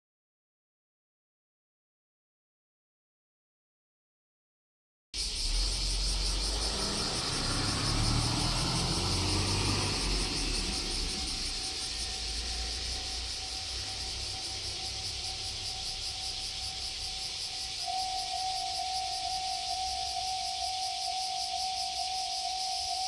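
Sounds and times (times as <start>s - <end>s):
low engine rumble: 5.2s - 20.9s
cicadas droning: 5.2s - 23.0s
faint steady tone: 10.0s - 23.0s.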